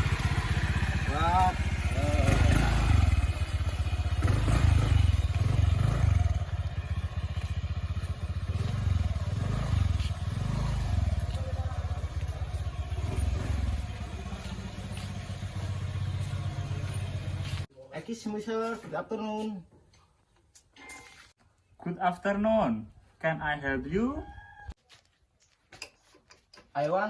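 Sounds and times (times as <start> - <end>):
motorcycle engine rumbling: 0.0 - 17.7.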